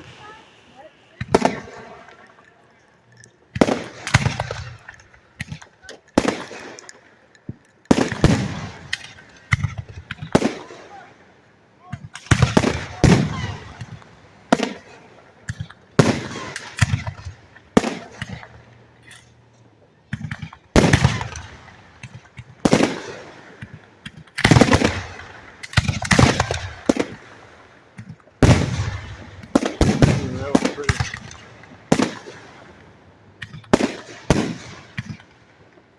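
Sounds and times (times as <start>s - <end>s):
firework shells bursting: 0.0s - 10.7s, 20.0s - 35.9s
firework crackles: 0.0s - 11.1s, 12.1s - 35.9s.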